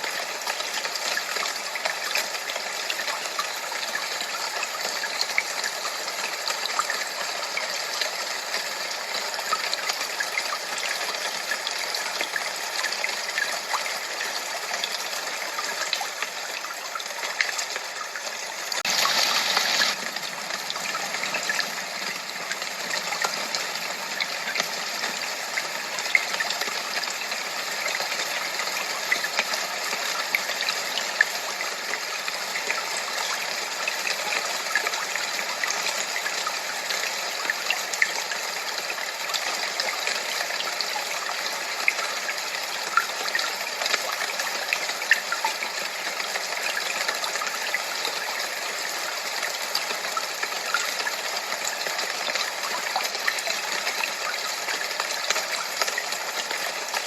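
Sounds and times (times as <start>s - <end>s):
running water rushing: 0.0s - 57.0s.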